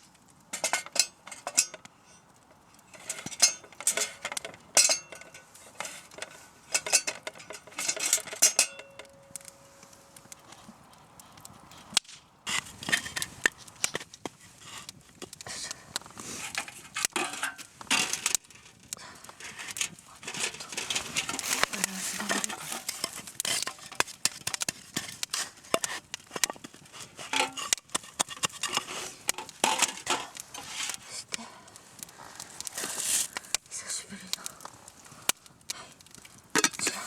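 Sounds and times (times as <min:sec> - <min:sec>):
camp gear clicking and scraping: 0:00.5 - 0:33.7, 0:34.4 - 0:37.0
pots and utensils clinking: 0:00.6 - 0:01.9, 0:02.9 - 0:10.0, 0:16.6 - 0:18.4, 0:19.4 - 0:30.9, 0:36.5 - 0:37.0.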